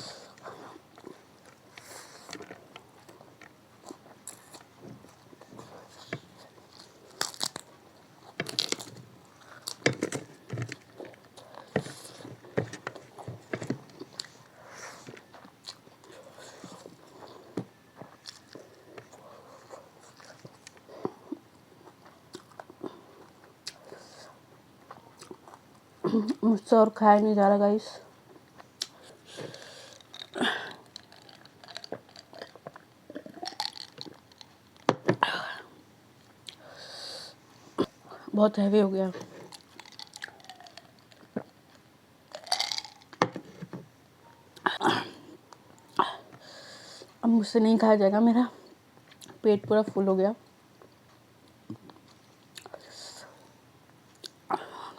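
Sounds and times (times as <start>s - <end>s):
person chewing and crunching food: 0.2s - 25.8s, 28.3s - 34.9s, 39.4s - 43.2s.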